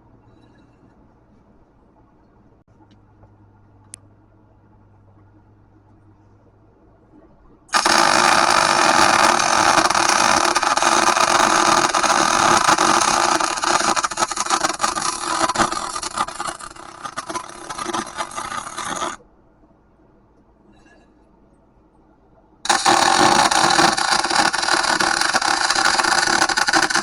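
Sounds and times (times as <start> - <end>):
arc welder crackling hiss: 7.7 - 19.2, 22.7 - 27.0.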